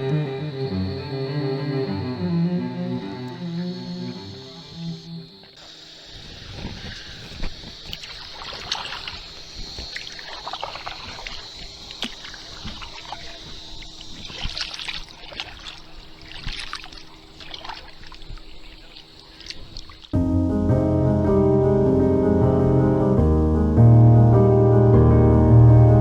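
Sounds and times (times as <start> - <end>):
paddle splashing and dripping: 5.5 - 20.2.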